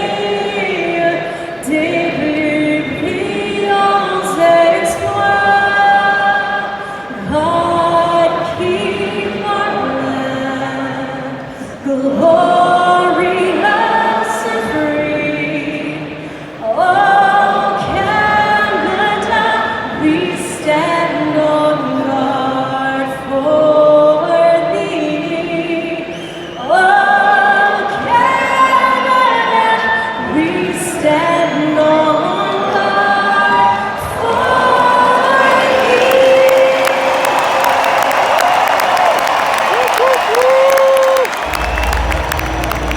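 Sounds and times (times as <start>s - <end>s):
choir singing long notes: 0.0s - 42.9s
musical accompaniment: 41.4s - 42.9s.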